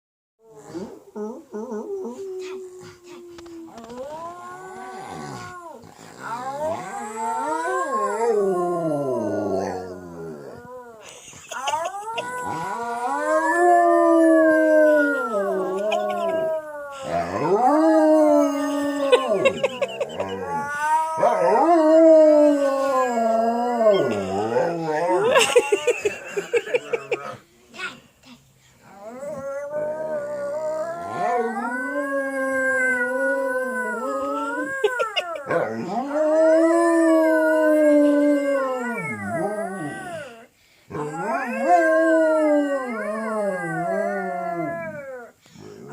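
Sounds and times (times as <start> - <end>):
dog howling: 0.7 - 10.9, 11.7 - 27.1, 28.9 - 45.4
girl howling: 6.4 - 10.6, 11.8 - 27.1, 29.0 - 40.5.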